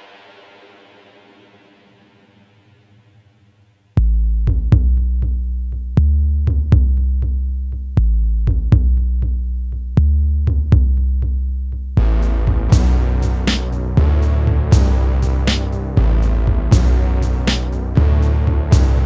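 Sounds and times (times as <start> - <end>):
deep sustained bass: 4.0 - 19.0
drum machine beat: 12.0 - 19.0.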